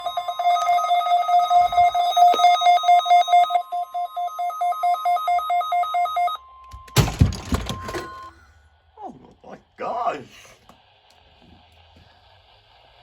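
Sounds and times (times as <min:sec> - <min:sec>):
steady warning alarm tone: 0:00.0 - 0:08.6.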